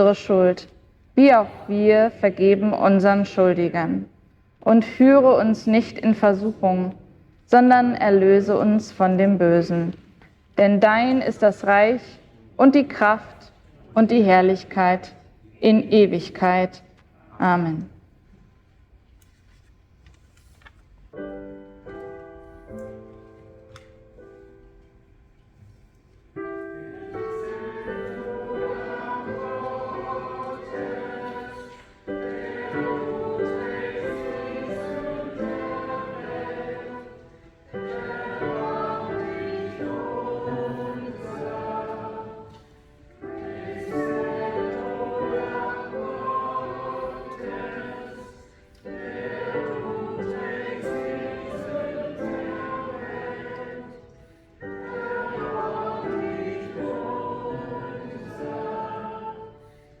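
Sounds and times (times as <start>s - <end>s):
choir singing a hymn: 1.2s - 4.1s, 4.8s - 9.9s, 26.0s - 60.0s.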